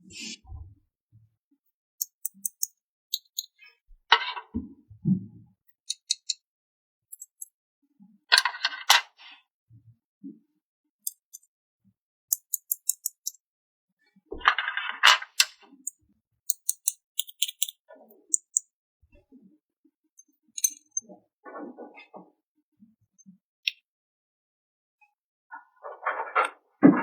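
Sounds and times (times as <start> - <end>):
plastic parts clicking and tapping: 2.0 - 3.5, 5.9 - 6.4, 7.1 - 7.5, 12.3 - 13.4, 16.5 - 18.6, 20.6 - 21.0.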